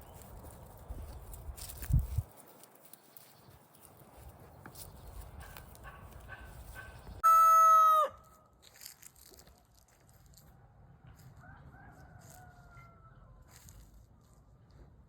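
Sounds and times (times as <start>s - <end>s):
faint chicken calls: 5.4s - 8.5s, 10.5s - 14.9s
rooster crowing: 7.2s - 8.4s, 11.1s - 13.6s.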